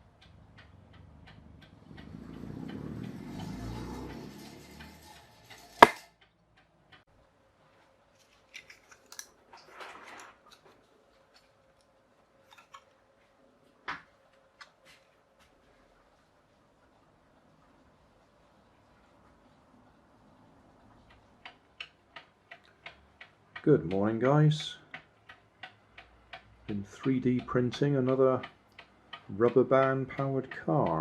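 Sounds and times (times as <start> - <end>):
mechanical clock ticking: 0.0 - 7.1, 20.5 - 31.0
scattered clicks: 0.0 - 7.1, 21.0 - 31.0.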